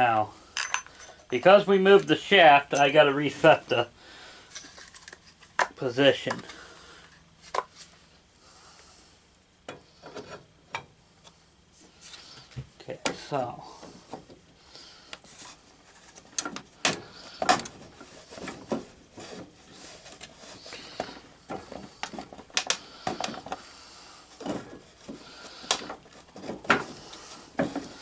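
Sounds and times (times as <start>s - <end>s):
knocks and rubbing on steering shaft: 15.4s - 23.7s, 24.4s - 28.0s.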